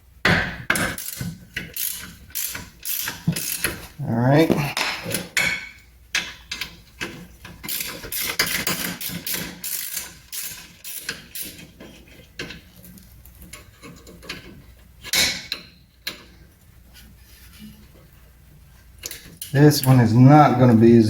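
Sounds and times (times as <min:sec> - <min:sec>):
ratchet wrench clicking: 0:00.8 - 0:03.8, 0:07.6 - 0:11.6.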